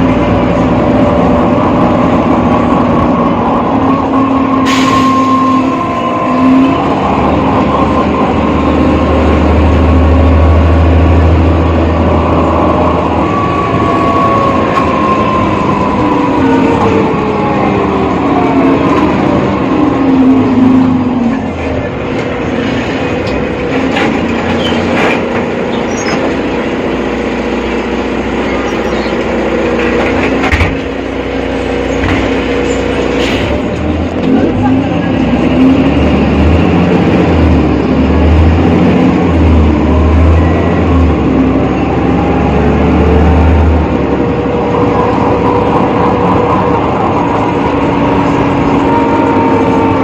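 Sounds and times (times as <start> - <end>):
city bus engine rumbling: 0.0 - 50.0.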